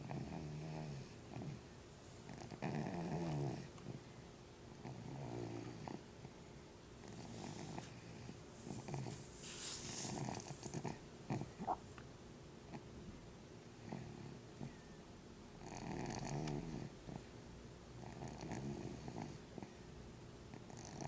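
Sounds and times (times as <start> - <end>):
dog snoring: 0.0 - 1.6, 2.3 - 3.7, 4.8 - 6.0, 7.0 - 9.2, 9.8 - 11.8, 13.8 - 14.7, 15.6 - 17.3, 18.0 - 19.7, 20.6 - 21.0.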